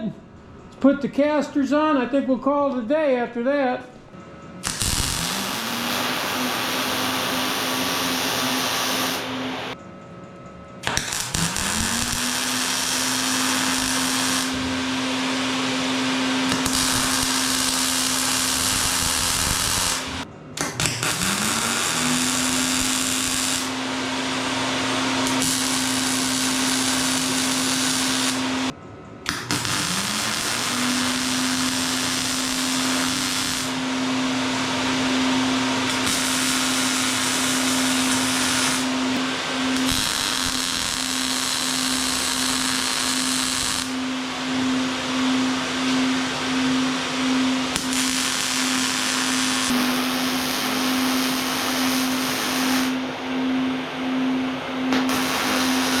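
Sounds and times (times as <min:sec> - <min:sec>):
electric power tool whining: 0:04.6 - 0:09.7, 0:10.8 - 0:20.2, 0:20.8 - 0:28.7, 0:29.3 - 0:53.0
high hiss of tool working: 0:10.9 - 0:14.6, 0:16.4 - 0:20.2, 0:25.2 - 0:28.7, 0:29.3 - 0:34.0, 0:35.8 - 0:44.0, 0:47.7 - 0:53.0, 0:55.1 - 0:56.0.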